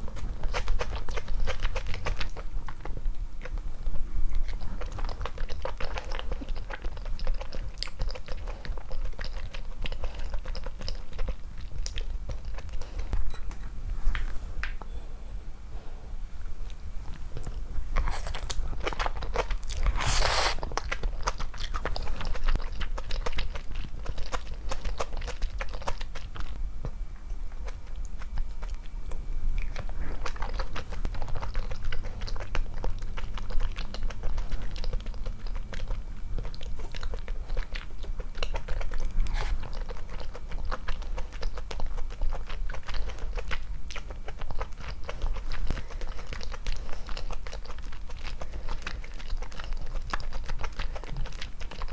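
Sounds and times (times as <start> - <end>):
person chewing food: 0.0 - 14.2, 16.7 - 51.9.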